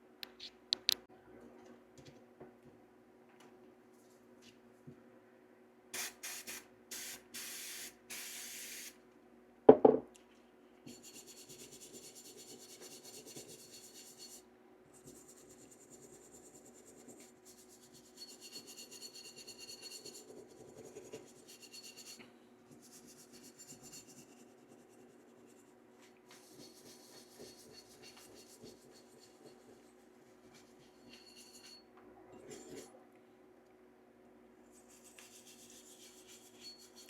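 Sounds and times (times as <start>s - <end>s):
brush scrubbing metal: 34.8s - 37.0s.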